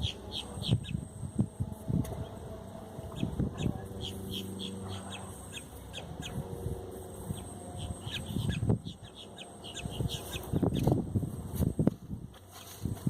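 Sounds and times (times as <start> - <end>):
small birds chirping: 0.0 - 1.4, 3.0 - 11.0
wind buffeting microphone: 0.0 - 4.8, 5.9 - 13.0.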